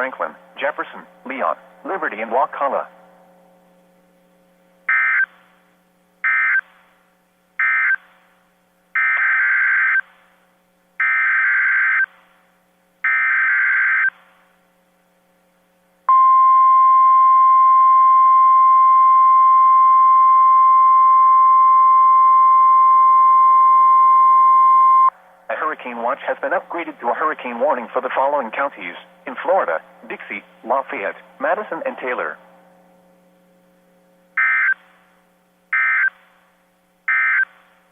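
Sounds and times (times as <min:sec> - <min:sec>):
steady warning alarm tone: 0:04.9 - 0:05.4, 0:06.2 - 0:06.8, 0:07.6 - 0:08.1, 0:09.0 - 0:10.1, 0:11.0 - 0:12.2, 0:13.0 - 0:14.2, 0:34.4 - 0:34.9, 0:37.1 - 0:37.5
radio static: 0:25.5 - 0:32.4.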